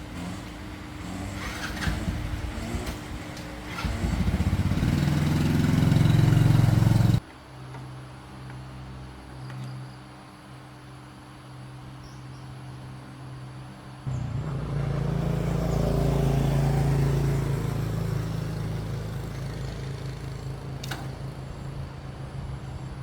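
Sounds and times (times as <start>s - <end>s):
motor running: 14.1s - 22.9s
low hum: 14.1s - 23.0s.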